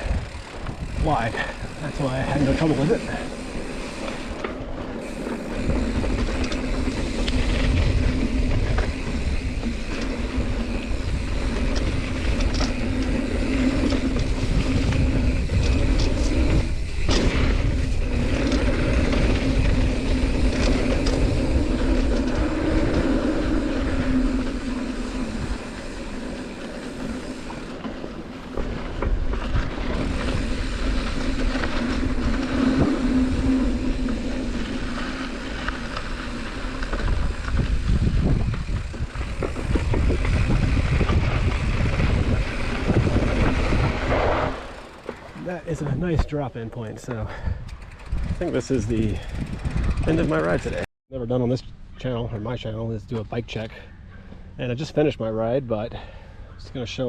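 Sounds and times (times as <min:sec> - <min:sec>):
bike tyre and wind noise: 0:00.0 - 0:57.0
bike knocks and rattles: 0:04.1 - 0:23.6, 0:26.7 - 0:50.8.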